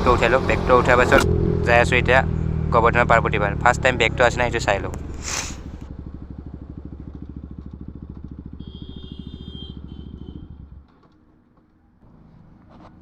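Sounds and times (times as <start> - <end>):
motorcycle engine idling: 1.3 - 10.9.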